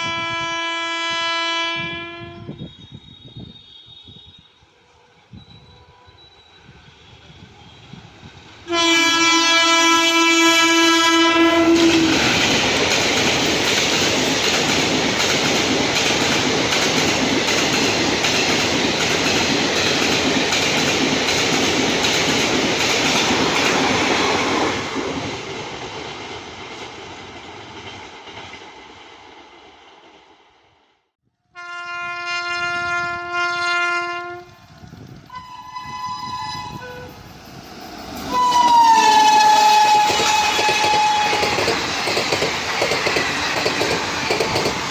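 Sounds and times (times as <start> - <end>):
locomotive horn: 0.0 - 8.0, 8.6 - 12.4, 31.4 - 34.7, 35.3 - 37.2, 38.3 - 41.7
train wheels clattering on track: 10.8 - 30.4, 34.4 - 36.2, 36.9 - 44.9.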